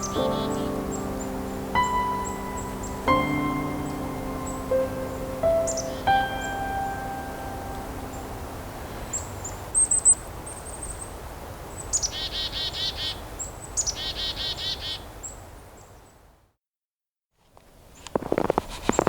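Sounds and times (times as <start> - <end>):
chickadees calling: 0.0 - 11.0.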